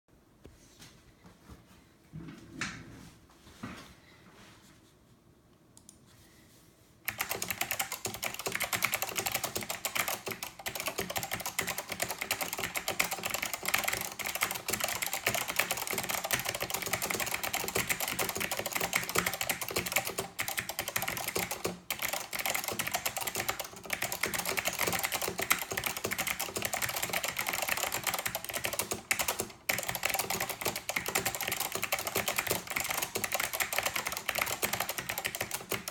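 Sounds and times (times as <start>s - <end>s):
mechanical keyboard typing: 7.1s - 35.9s.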